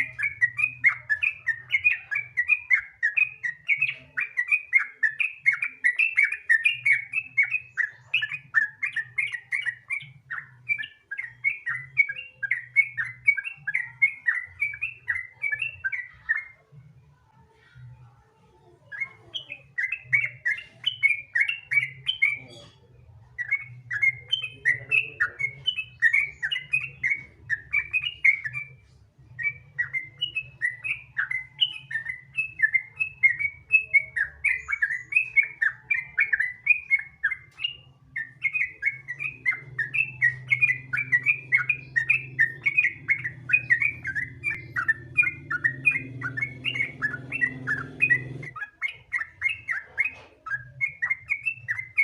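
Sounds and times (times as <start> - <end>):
bulbul singing bubbly chirps: 29.4 - 49.9
faint low hum: 35.6 - 49.0.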